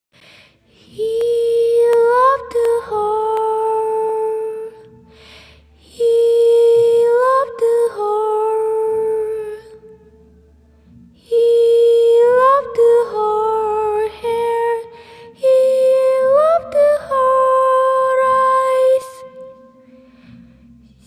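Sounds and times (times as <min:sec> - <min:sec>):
faint low accompaniment: 0:00.2 - 0:21.0
wordless high vocal melody: 0:00.7 - 0:21.0.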